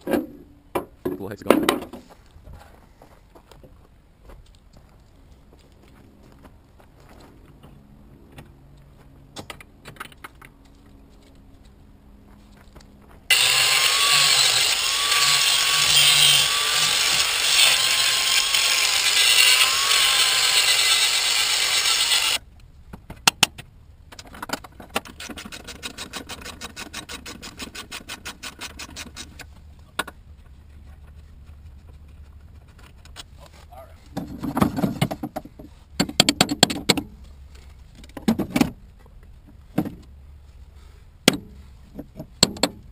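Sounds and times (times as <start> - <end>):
power grinder grinding metal: 13.3 - 22.4.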